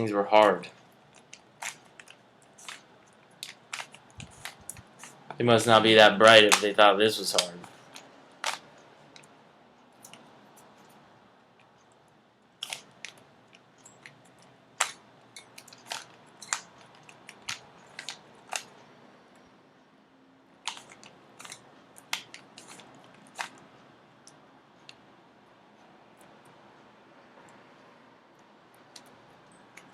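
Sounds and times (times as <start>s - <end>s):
puzzle cube clicking as twisted: 3.4s - 5.2s, 20.7s - 23.6s.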